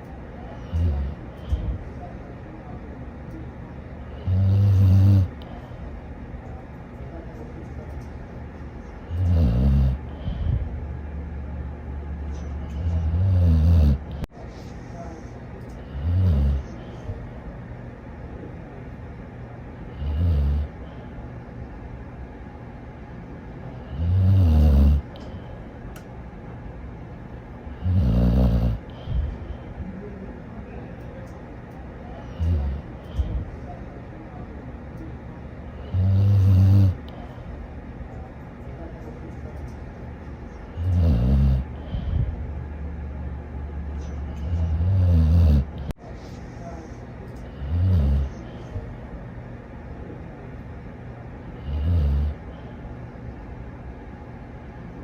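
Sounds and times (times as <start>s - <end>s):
dog snoring: 0.6s - 1.7s, 4.1s - 5.4s, 9.0s - 10.6s, 12.4s - 14.3s, 15.8s - 16.9s, 19.9s - 20.8s, 23.8s - 25.2s, 27.7s - 29.3s, 32.3s - 33.5s, 35.8s - 37.2s, 40.7s - 42.3s, 44.3s - 46.0s, 47.5s - 48.6s, 51.6s - 52.5s.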